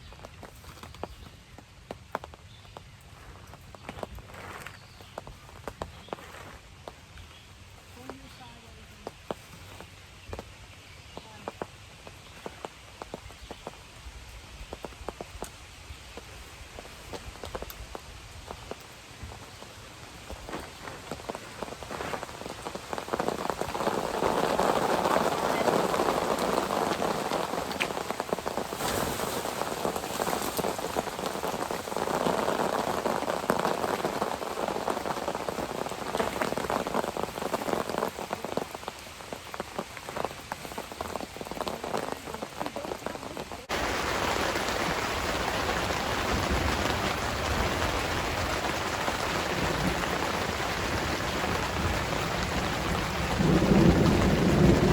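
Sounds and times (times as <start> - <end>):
raindrops striking close by: 0.0 - 54.9
heavy rain falling: 11.2 - 54.9.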